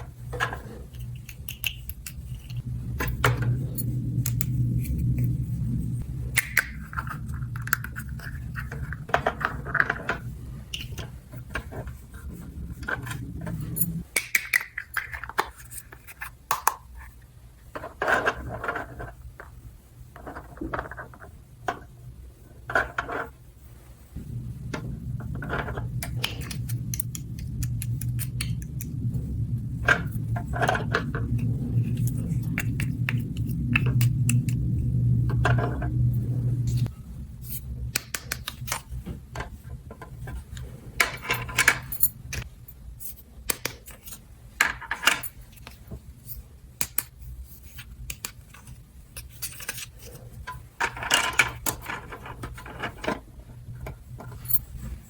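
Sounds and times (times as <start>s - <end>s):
steady low hum: 0.0s - 55.0s
plastic toy pieces clattering: 50.8s - 53.2s.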